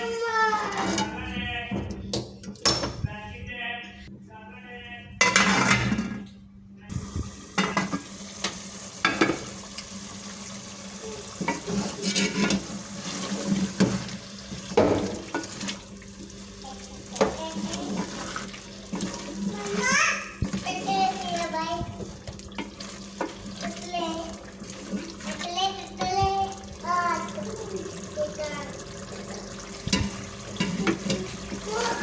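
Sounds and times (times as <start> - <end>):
frying sizzle: 6.9 - 32.0
spoon scraping cooking pot: 11.4 - 13.6.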